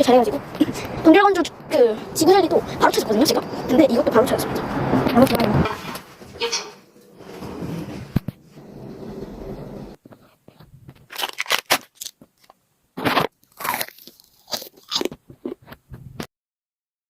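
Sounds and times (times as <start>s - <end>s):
candy crunching while chewed: 11.0s - 15.8s.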